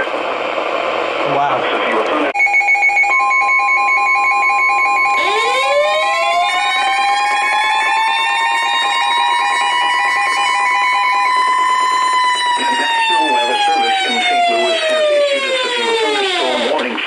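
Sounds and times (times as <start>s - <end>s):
steady high warning tone: 1.2s - 17.0s
fast pulsing beep: 2.4s - 5.6s
siren winding up: 2.4s - 17.0s.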